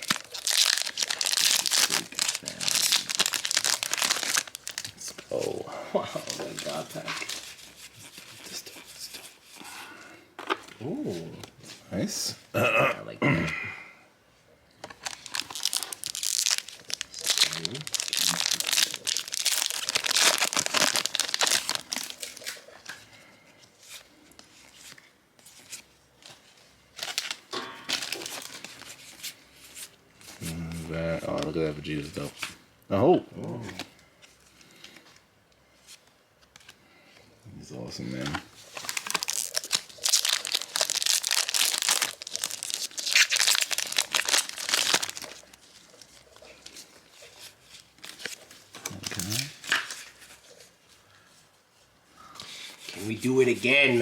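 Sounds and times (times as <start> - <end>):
foil wrapper crinkling and tearing: 0.0 - 5.5, 6.2 - 8.2, 14.9 - 22.9, 27.0 - 29.0, 38.6 - 50.6.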